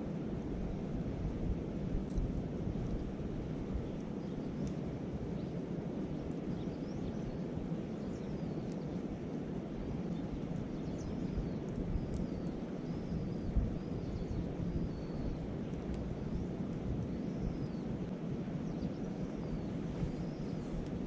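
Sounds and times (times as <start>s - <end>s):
wind on microphone: 0.0s - 21.0s
faint bird chirps: 6.4s - 9.0s, 10.0s - 21.0s.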